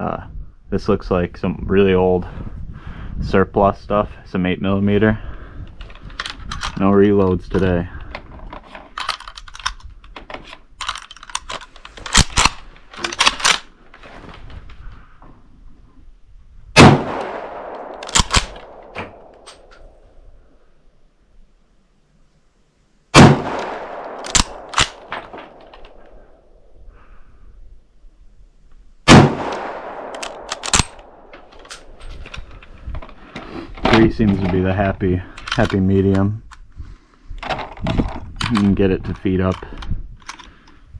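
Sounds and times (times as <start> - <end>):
metallic clicks of rifle loading: 5.7 - 14.8, 17.1 - 20.0, 23.4 - 26.4, 29.4 - 34.7, 35.3 - 36.8, 37.4 - 40.8
rifle shot with echo: 16.8 - 19.5, 23.1 - 26.4, 29.1 - 31.5.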